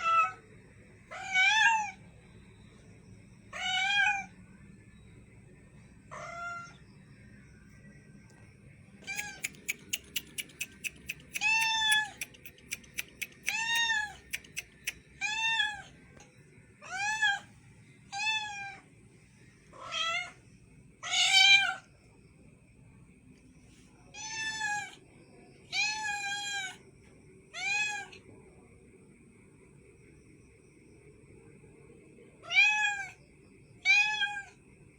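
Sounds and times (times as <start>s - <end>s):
cat meowing: 6.1s - 6.7s, 33.8s - 34.5s
quick sharp clicks: 9.0s - 15.0s.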